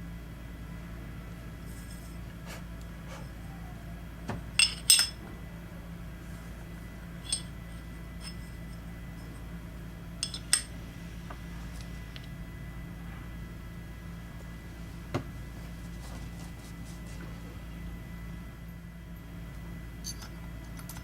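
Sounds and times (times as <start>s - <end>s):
steady low hum: 0.0s - 21.0s
metal parts clinking: 4.5s - 5.2s, 7.2s - 9.3s, 10.2s - 10.7s, 20.0s - 21.0s.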